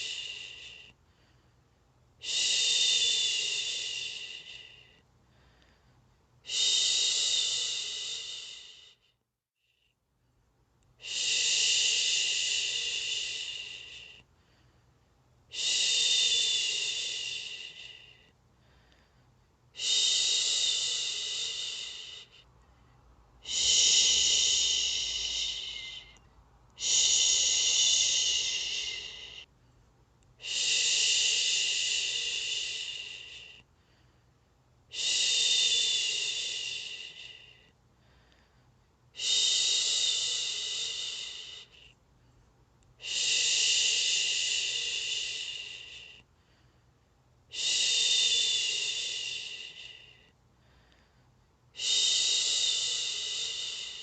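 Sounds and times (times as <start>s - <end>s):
person shushing: 23.4s - 26.2s, 26.8s - 29.4s.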